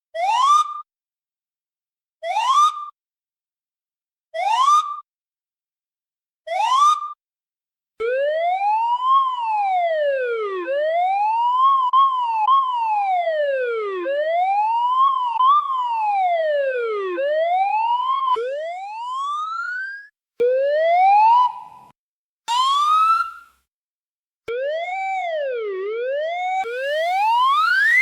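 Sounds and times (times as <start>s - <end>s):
siren wailing: 26.6s - 28.0s.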